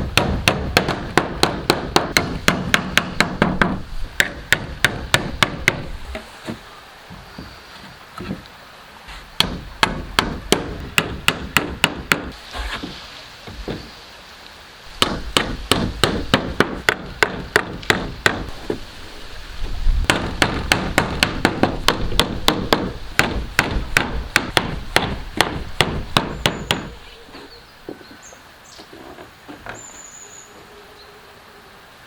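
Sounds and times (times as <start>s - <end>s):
hammering on wood: 0.0s - 6.6s, 9.4s - 12.4s, 15.0s - 18.8s, 20.0s - 27.0s.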